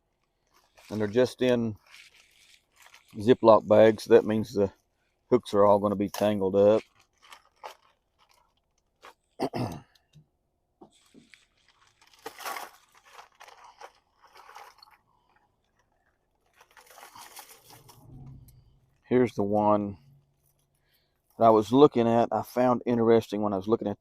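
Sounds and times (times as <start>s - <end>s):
plastic bags crinkling: 0.0s - 4.4s, 5.4s - 9.4s, 10.9s - 19.0s.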